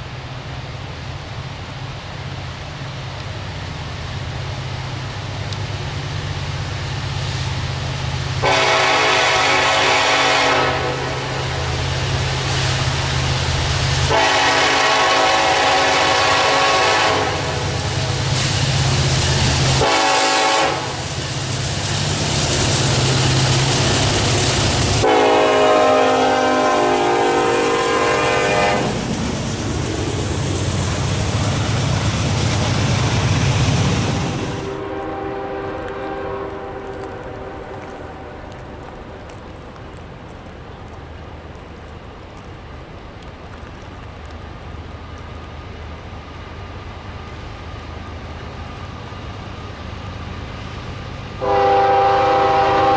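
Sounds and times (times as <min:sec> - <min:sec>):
locomotive low rumble: 0:00.0 - 0:52.9
train wheel noise: 0:00.0 - 0:52.9
locomotive horn blasts: 0:08.4 - 0:11.8, 0:14.1 - 0:17.8, 0:19.8 - 0:21.0, 0:25.0 - 0:29.0, 0:34.7 - 0:38.5, 0:51.4 - 0:52.9.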